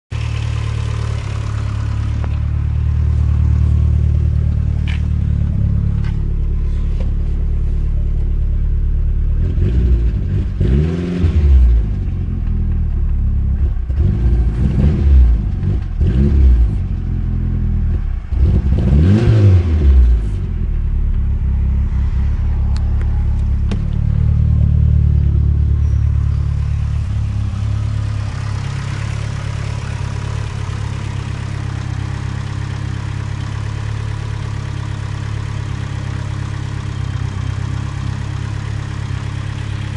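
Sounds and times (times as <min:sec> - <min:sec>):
car engine idling and revving: 0:00.1 - 0:39.9
engine lifter tick: 0:02.0 - 0:02.6.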